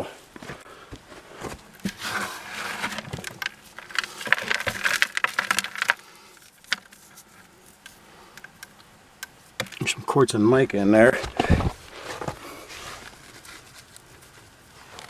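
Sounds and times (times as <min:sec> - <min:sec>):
stones scraping and clattering: 0:01.7 - 0:08.8, 0:11.1 - 0:15.0.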